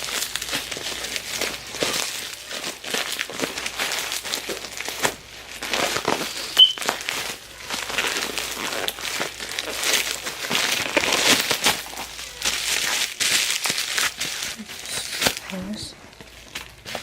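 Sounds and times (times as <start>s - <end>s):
packaging crinkling and tearing: 0.0s - 17.0s
brief high squeak: 6.6s - 6.8s.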